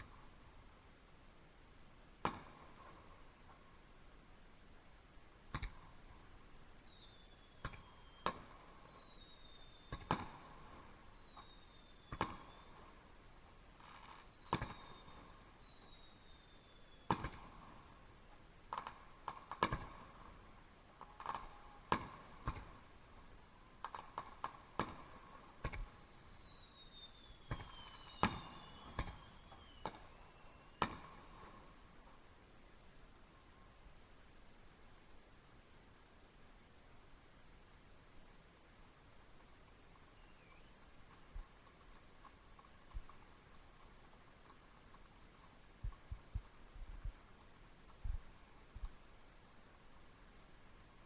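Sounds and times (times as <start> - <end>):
fireworks whistles sliding down: 5.9 - 17.4, 25.7 - 31.0
fireworks bangs: 27.4 - 31.5.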